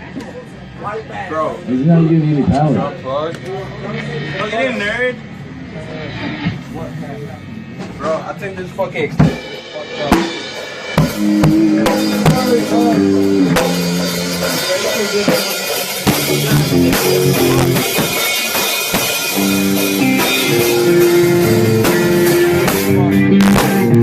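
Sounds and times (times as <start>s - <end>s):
drum kit: 2.5s - 8.2s, 8.9s - 24.0s
electric guitar and bass riff: 10.9s - 24.0s.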